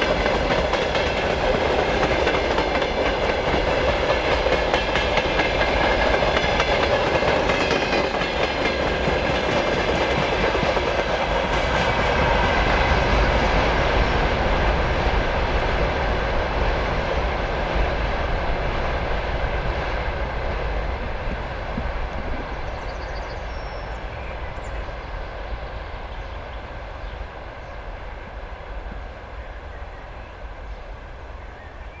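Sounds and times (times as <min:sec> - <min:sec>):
train wheels clattering over rail joints: 0:00.0 - 0:18.4.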